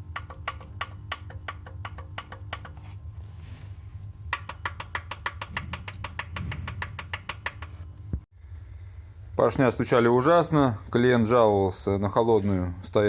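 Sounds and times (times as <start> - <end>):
rapid metallic engine knocking: 5.2 - 7.8.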